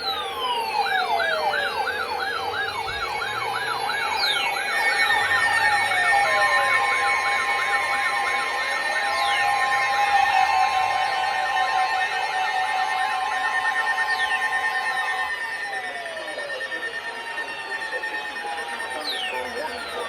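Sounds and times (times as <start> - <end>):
downward sweeping whistling tones: 0.0 - 20.0
steady alarm tones: 0.0 - 20.0
yelp siren warbling: 0.0 - 20.0.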